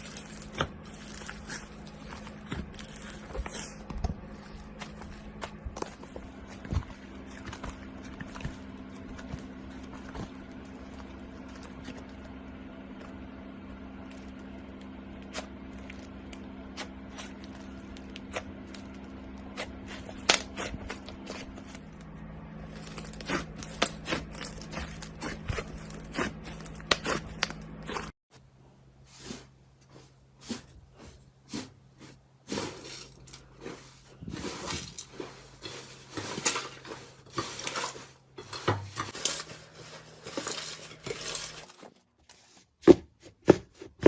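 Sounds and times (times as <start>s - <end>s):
slime crackling and popping: 0.0s - 3.8s, 22.7s - 28.1s
steady low hum: 0.0s - 41.8s.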